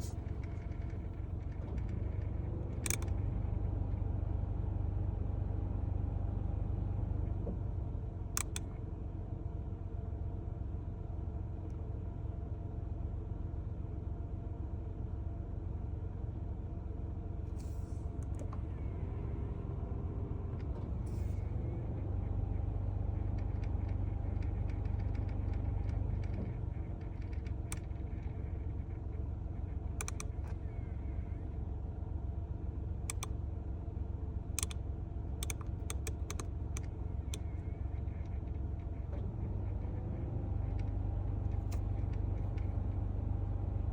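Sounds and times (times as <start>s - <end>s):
motor clicking: 0.0s - 3.2s, 8.4s - 8.7s, 29.9s - 30.6s, 33.0s - 33.3s, 34.6s - 34.8s, 35.4s - 38.4s
car engine and ventilation hum: 0.0s - 43.9s.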